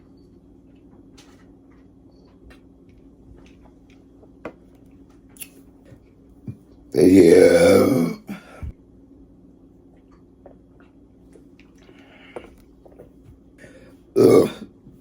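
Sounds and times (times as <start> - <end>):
person belching: 7.0 - 8.7, 14.2 - 14.7.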